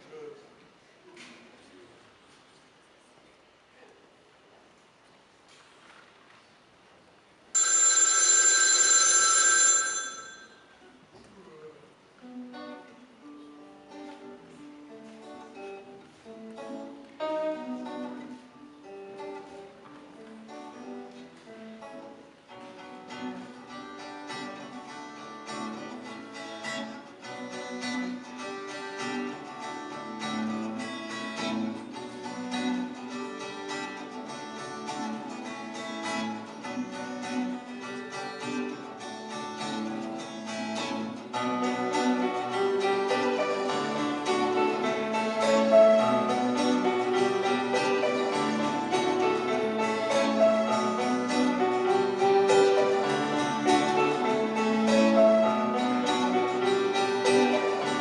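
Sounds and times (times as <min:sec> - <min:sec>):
bell alarm clock ringing: 0:07.6 - 0:10.6
plucked guitar music: 0:12.3 - 0:58.0.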